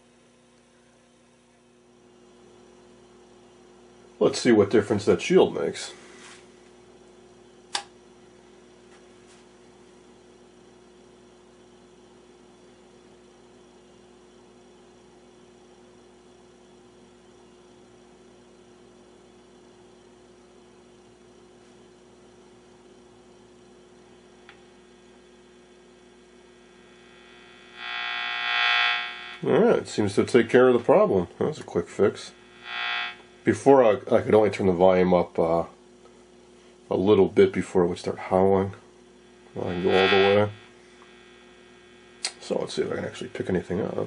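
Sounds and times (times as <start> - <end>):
sharp click: 7.7 - 7.9
radio loudspeaker low hum: 24.2 - 35.8, 36.8 - 44.0.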